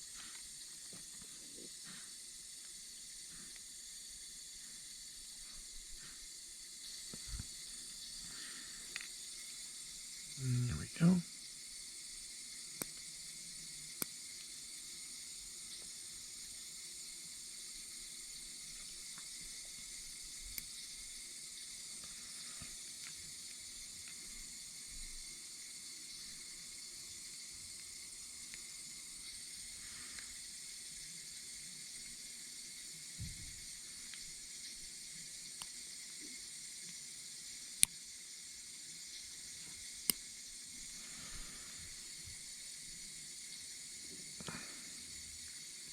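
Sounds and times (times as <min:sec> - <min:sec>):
faint hiss: 0:00.0 - 0:45.9.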